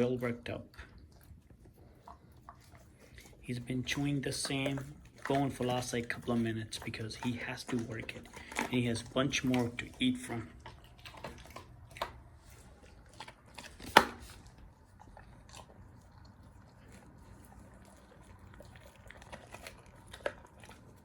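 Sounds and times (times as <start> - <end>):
dog gnawing on bone: 0.0 - 21.0
loud bone crack: 4.2 - 16.3, 17.7 - 21.0.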